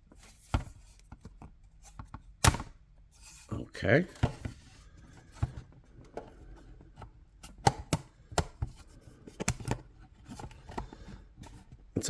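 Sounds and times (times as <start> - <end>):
plastic parts clicking: 7.4 - 11.2.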